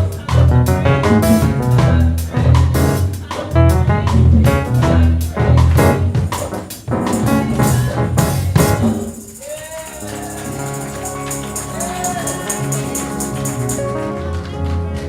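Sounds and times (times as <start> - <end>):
gospel band with drums: 0.0 - 15.0
tambourine rhythm: 5.7 - 14.1.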